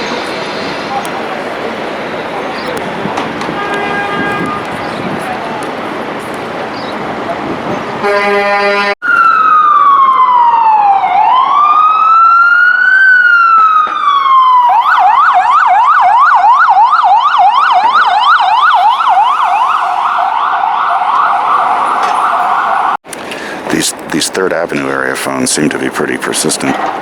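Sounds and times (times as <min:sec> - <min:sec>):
vehicle horn blast: 0:03.3 - 0:05.2, 0:08.0 - 0:09.0, 0:26.5 - 0:27.0
electronic siren wailing and yelping: 0:09.0 - 0:23.0.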